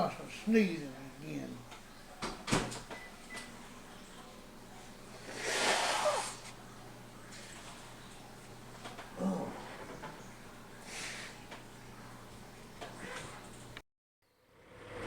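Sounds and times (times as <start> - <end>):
person sneezing: 5.3 - 6.5.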